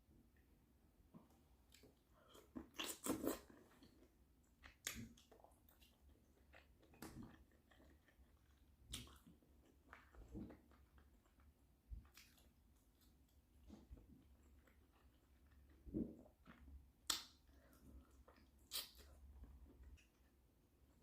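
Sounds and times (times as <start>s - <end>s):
person chewing food: 1.6s - 20.4s.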